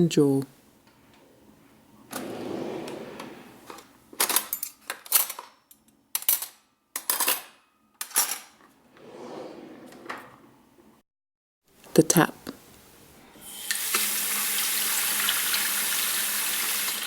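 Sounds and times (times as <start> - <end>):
drawer sliding open: 2.1 - 4.4, 8.9 - 10.6.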